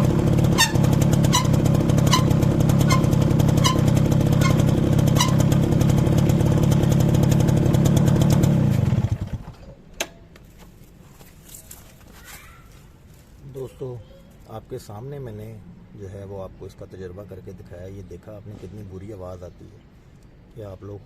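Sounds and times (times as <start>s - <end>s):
drum brake squeaking: 0.0s - 5.8s
motorcycle engine running: 0.0s - 9.6s.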